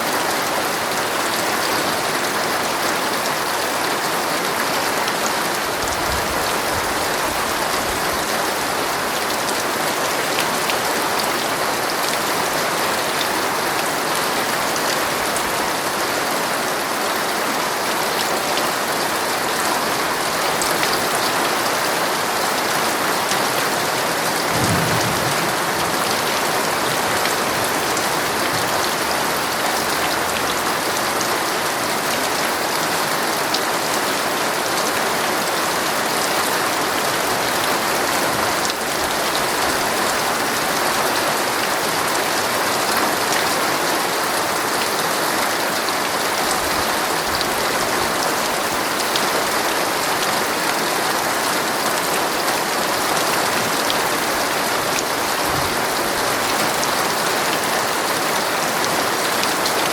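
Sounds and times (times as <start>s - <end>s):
heavy rain on tent fabric: 0.0s - 59.9s.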